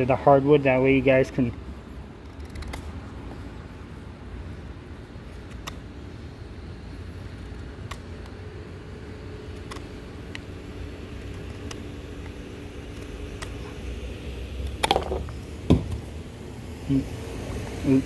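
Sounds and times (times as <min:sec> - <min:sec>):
steady low rumble: 0:00.0 - 0:18.0
sharp clicks and snaps: 0:02.2 - 0:03.0, 0:05.4 - 0:05.8, 0:07.4 - 0:08.4, 0:09.5 - 0:10.5, 0:11.2 - 0:13.6.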